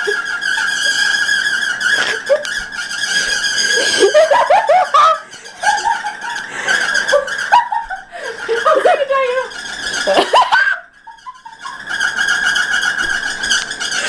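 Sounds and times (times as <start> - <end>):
electric fan whining: 0.0 - 14.0
person giggling: 3.7 - 9.5, 10.1 - 11.5.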